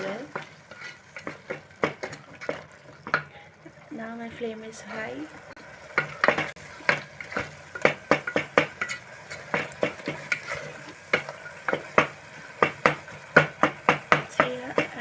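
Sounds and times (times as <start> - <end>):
spatula scraping a pot: 0.0 - 3.4, 6.0 - 11.9
light sizzle of frying: 0.0 - 15.0.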